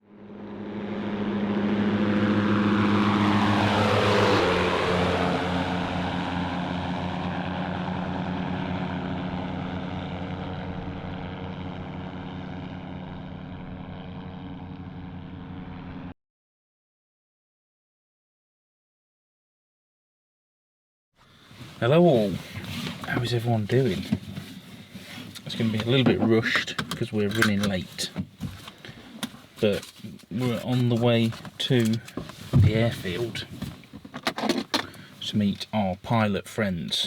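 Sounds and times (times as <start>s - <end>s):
propeller aircraft flying past: 0.0s - 16.2s.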